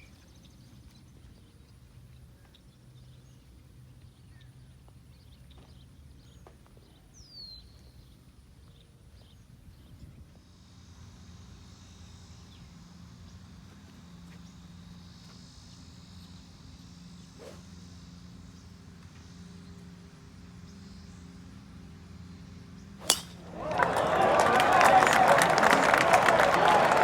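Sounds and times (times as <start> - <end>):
sharp crack: 23.0 - 24.4.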